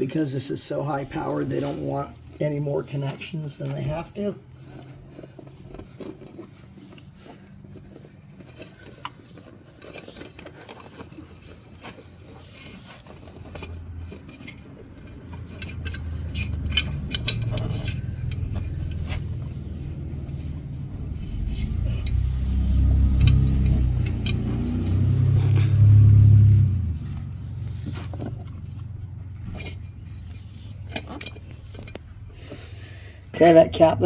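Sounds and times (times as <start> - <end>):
metal parts clinking and scraping: 0.5 - 33.6
low rumble: 15.8 - 33.1.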